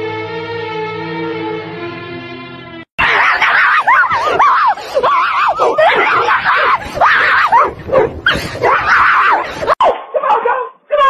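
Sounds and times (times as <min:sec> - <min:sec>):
dog barking loudly: 0:03.0 - 0:11.0.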